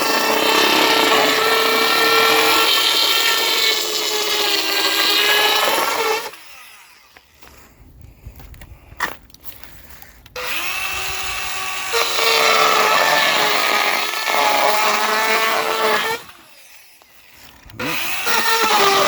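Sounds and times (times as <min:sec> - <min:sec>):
circular saw cutting: 0:00.0 - 0:07.2, 0:10.4 - 0:19.0.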